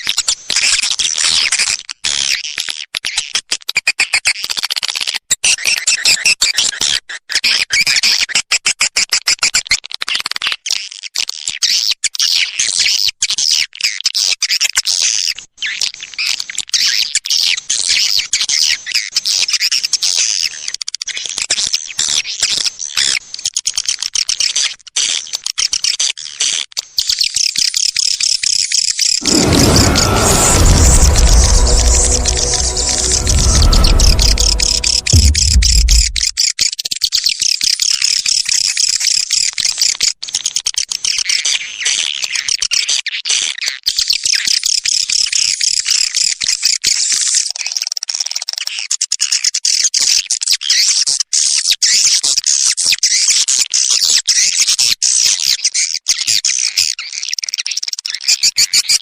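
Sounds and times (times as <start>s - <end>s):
loud deep steady tone: 29.2s - 36.3s.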